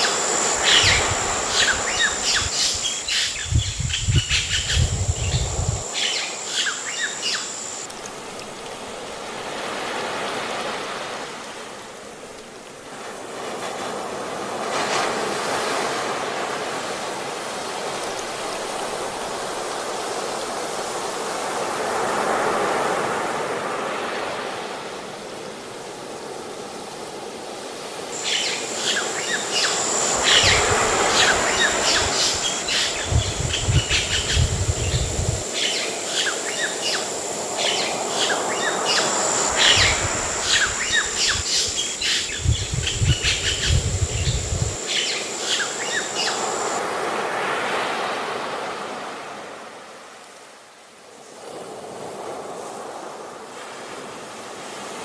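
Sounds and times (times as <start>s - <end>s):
ocean surf washing in: 0.0s - 3.5s, 8.9s - 25.0s, 27.9s - 49.9s
birds chirping: 0.0s - 8.6s, 28.2s - 46.8s
high-pitched insect tone: 0.0s - 12.9s, 28.1s - 47.6s.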